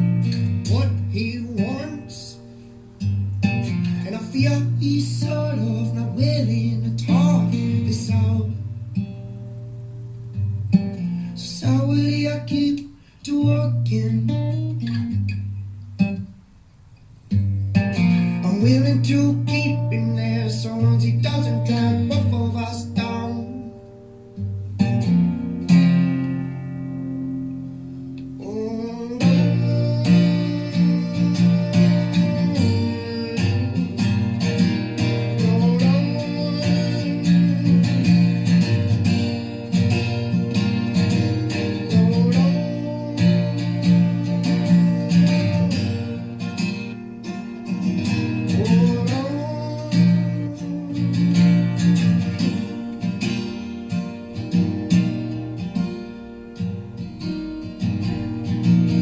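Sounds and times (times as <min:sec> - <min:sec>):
acoustic guitar strumming: 0:00.0 - 0:59.0
voice holding wordless notes: 0:00.5 - 0:02.6, 0:28.2 - 0:39.0, 0:40.0 - 0:52.6.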